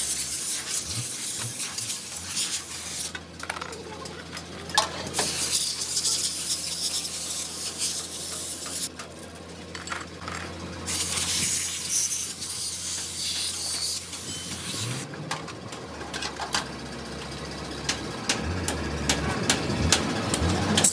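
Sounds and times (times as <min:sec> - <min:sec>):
scraping on metal: 0:04.7 - 0:08.9.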